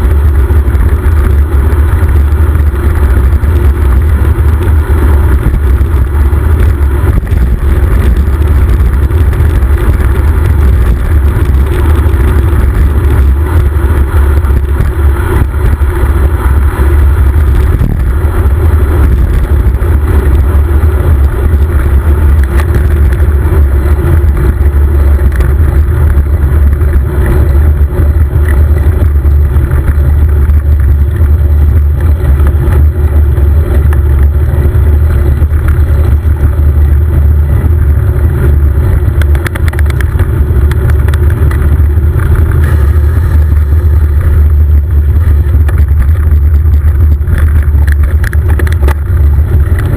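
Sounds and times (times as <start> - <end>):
wind buffeting microphone: 0.0 - 49.9.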